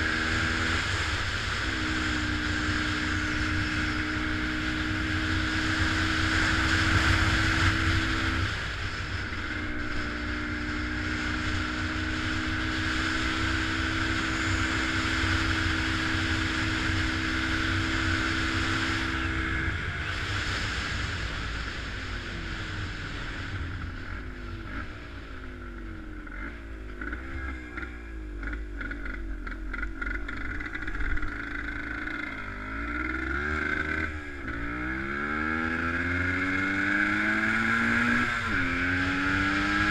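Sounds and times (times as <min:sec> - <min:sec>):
vehicle engine revving: 0:00.0 - 0:39.9.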